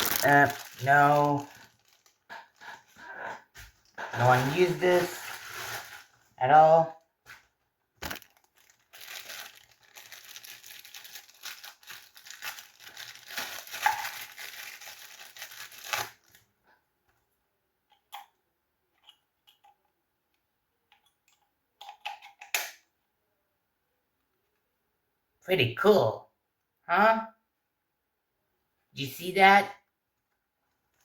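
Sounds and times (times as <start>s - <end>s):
plastic packaging crinkling: 0.0s - 3.0s, 3.6s - 6.9s, 8.0s - 16.5s.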